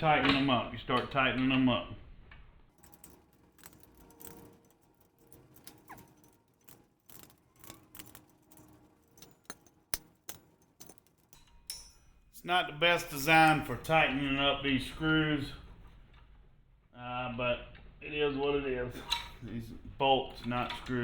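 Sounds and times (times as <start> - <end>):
wrench clicking on metal bolts: 2.8 - 12.4.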